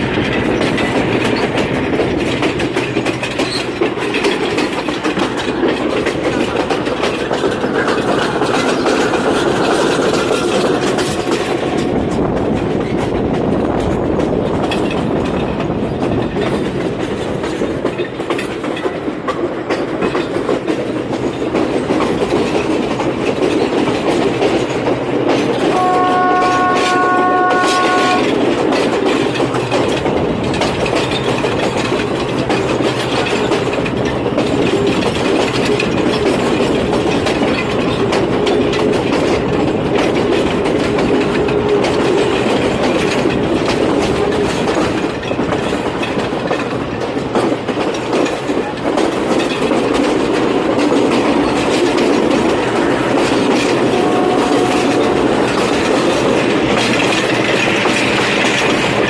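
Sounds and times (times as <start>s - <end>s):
train rumbling on rails: 0.0s - 59.0s
locomotive horn: 25.6s - 28.4s, 52.6s - 55.8s.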